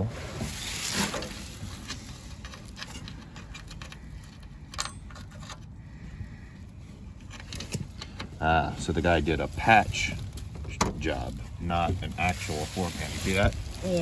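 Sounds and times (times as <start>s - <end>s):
carpet rustling and scraping: 0.0s - 14.0s.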